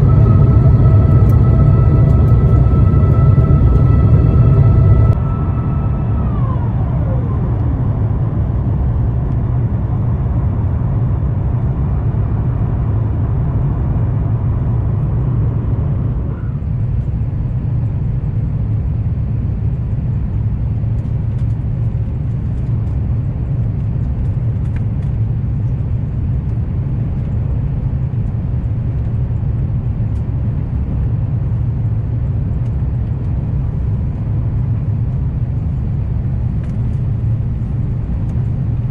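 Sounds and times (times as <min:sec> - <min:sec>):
whine falling in pitch: 0:00.0 - 0:09.3
airplane cabin engine rumble: 0:00.0 - 0:38.9
faint steady whine: 0:00.0 - 0:38.9.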